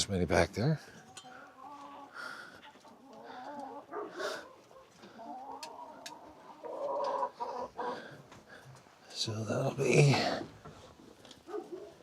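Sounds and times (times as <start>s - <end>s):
hens clucking: 0.9s - 9.0s.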